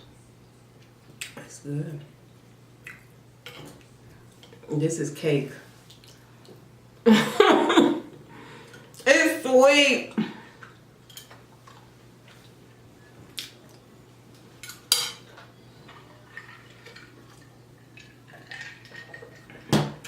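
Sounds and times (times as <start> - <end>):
soft eating sounds: 0.2 - 4.8, 5.5 - 7.0, 10.1 - 19.7
cutlery clinking on a plate: 14.6 - 15.3.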